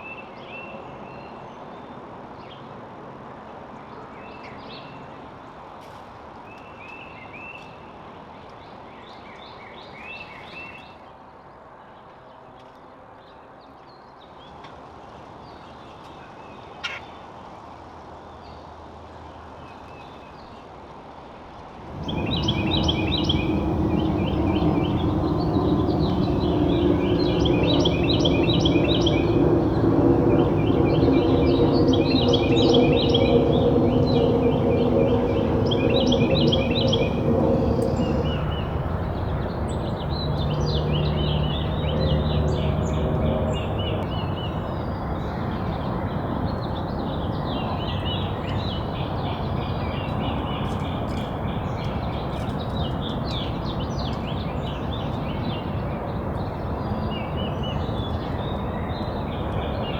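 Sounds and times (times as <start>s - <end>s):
dense background noise: 21.9s - 52.7s
songbirds chirping and singing: 21.9s - 59.9s.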